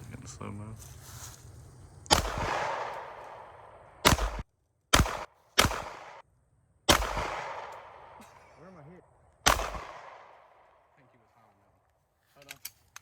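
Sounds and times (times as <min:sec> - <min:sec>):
gunshots with echo: 0:02.1 - 0:06.2, 0:06.9 - 0:08.7, 0:09.4 - 0:10.8.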